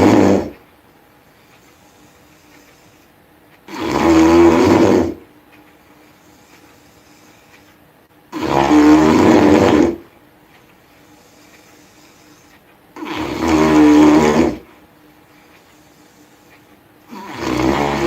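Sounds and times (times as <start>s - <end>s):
person snoring loudly: 0.0s - 0.6s, 3.7s - 5.2s, 8.3s - 10.0s, 13.0s - 14.7s, 17.1s - 18.0s.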